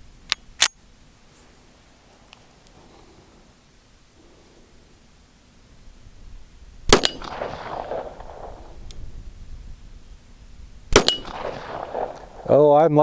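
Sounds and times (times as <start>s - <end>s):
pistol shots with ringing echo: 6.9s - 8.9s, 10.9s - 12.6s.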